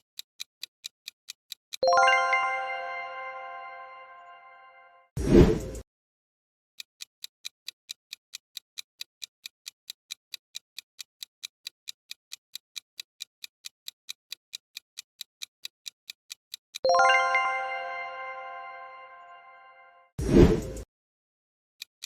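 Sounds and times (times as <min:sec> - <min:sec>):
clock ticking: 0:00.0 - 0:03.7, 0:06.8 - 0:18.9
bright ringing chime: 0:01.8 - 0:05.0, 0:16.9 - 0:20.1.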